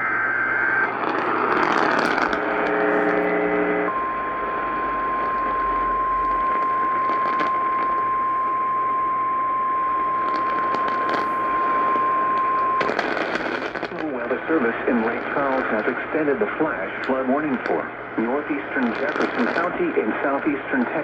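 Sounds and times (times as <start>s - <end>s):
radio static and crackle: 0.0s - 21.0s.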